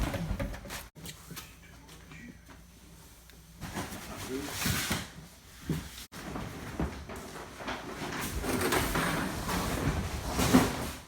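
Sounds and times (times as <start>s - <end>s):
scraping of objects: 6.1s - 11.0s.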